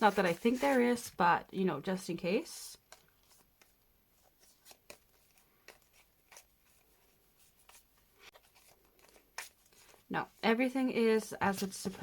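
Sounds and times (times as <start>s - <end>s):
paper cards clicking and rubbing: 2.9s - 10.1s.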